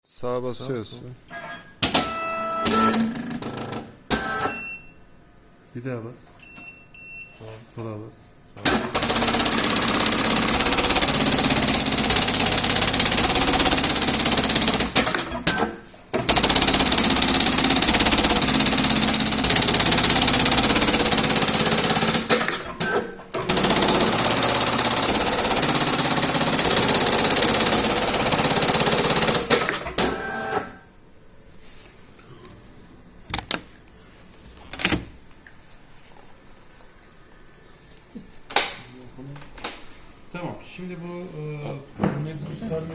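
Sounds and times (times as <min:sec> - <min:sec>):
machine motor running: 0:08.7 - 0:30.7.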